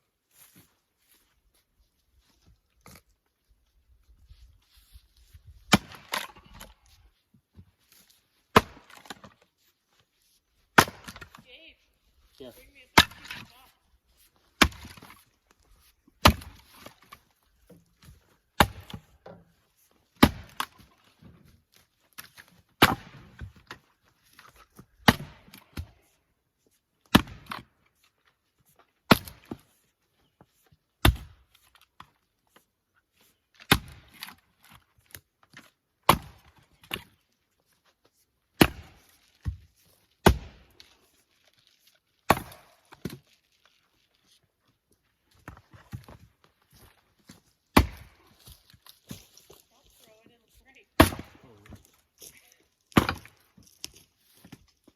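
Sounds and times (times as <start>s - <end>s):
axe chopping firewood: 5.6s - 6.8s, 7.6s - 9.4s, 10.6s - 11.6s, 12.6s - 26.1s, 27.0s - 27.9s, 29.0s - 29.8s, 31.0s - 32.2s, 33.5s - 37.2s, 38.5s - 41.1s, 42.2s - 43.4s, 45.3s - 49.7s, 50.9s - 52.3s, 52.9s - 54.7s.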